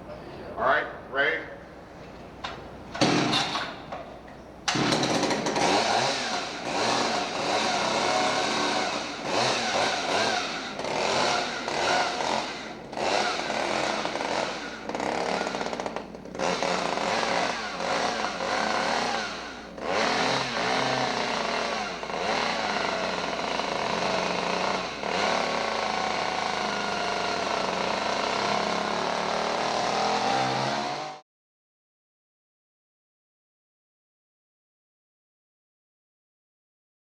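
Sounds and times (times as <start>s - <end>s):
chainsaw engine revving: 2.9s - 4.0s, 4.7s - 31.2s.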